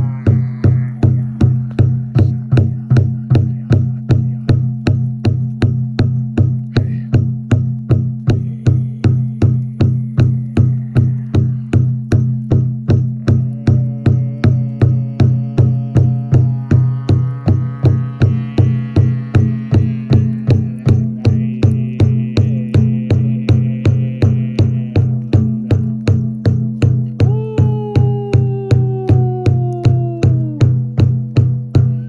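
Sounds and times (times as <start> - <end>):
higher held tones: 0.0 - 2.4, 8.3 - 25.2
steady drum beat: 0.0 - 32.0
low steady drone: 8.3 - 25.8.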